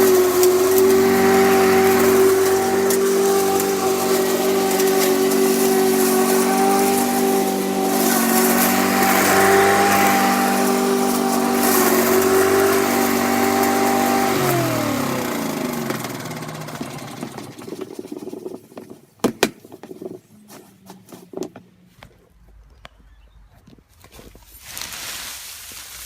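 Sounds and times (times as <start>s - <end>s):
lawn mower engine running: 0.0s - 19.6s.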